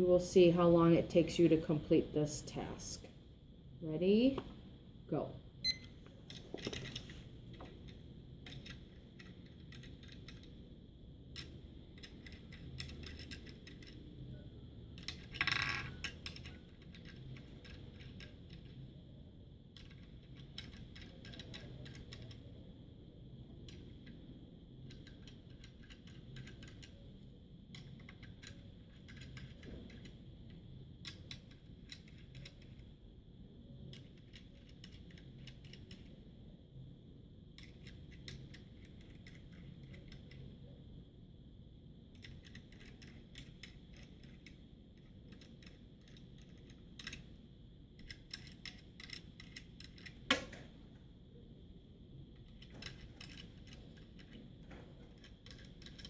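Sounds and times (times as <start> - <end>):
metal nuts clicking and rattling: 52.4 - 56.0.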